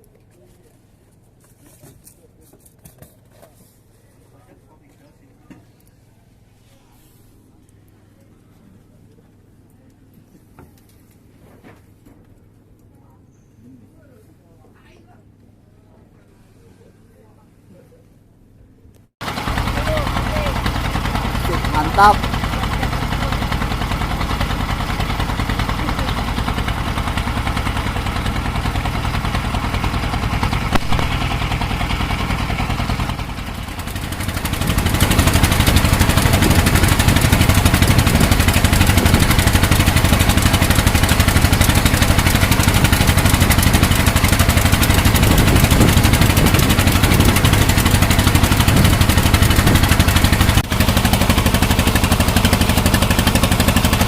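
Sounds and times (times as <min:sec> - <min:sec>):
boat engine running: 0:19.2 - 0:54.0.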